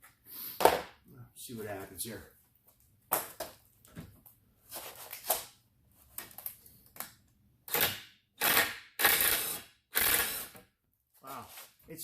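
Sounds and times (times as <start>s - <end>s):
power drill short bursts: 8.4s - 10.6s.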